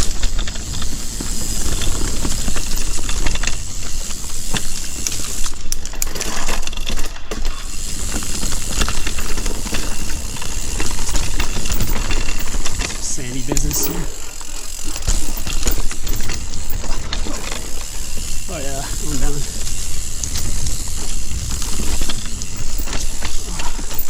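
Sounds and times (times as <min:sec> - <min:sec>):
bike clicks and rattles: 0:00.0 - 0:24.0
bike tyre noise: 0:00.0 - 0:24.0
wind rush on microphone: 0:18.4 - 0:23.8.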